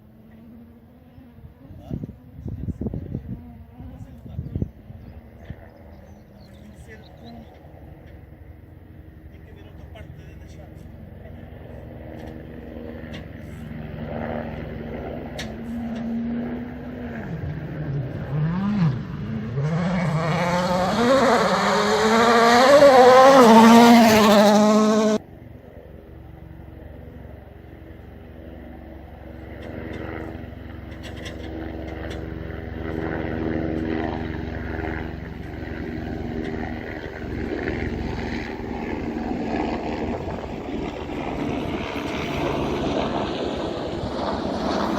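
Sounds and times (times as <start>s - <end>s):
steady engine drone: 0.0s - 44.9s
rally car engine at full throttle: 15.4s - 25.2s.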